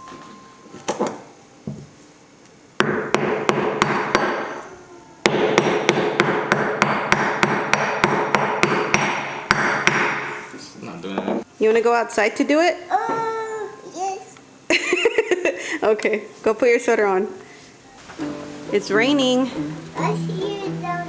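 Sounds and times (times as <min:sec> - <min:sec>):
hammer striking rock: 0:05.3 - 0:10.3.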